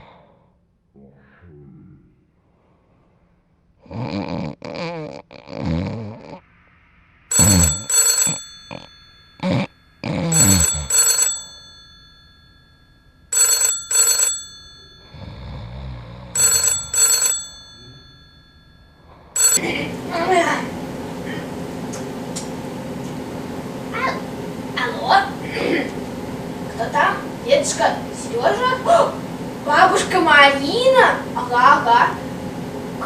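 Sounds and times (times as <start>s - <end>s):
telephone double ring: 7.3s - 15.4s, 16.4s - 19.7s.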